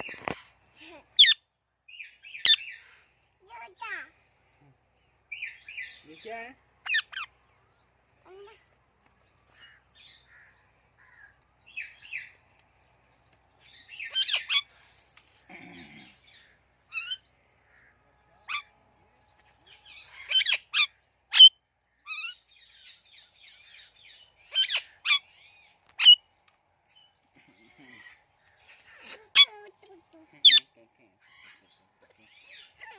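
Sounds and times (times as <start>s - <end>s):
parrot chirping: 1.2s - 2.8s, 6.8s - 7.3s, 13.7s - 14.7s, 16.2s - 17.2s, 19.9s - 26.3s.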